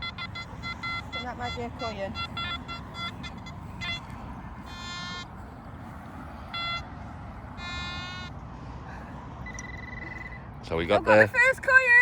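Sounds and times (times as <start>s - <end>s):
metal detector buzzy tone: 0.0s - 4.1s
metal detector beeps: 0.0s - 5.3s, 6.5s - 6.9s, 7.6s - 8.4s, 9.4s - 10.5s.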